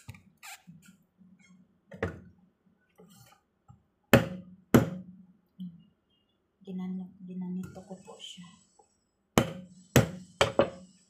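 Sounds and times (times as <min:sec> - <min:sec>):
olives being struck and pounded: 0:04.1 - 0:05.1, 0:09.4 - 0:10.8.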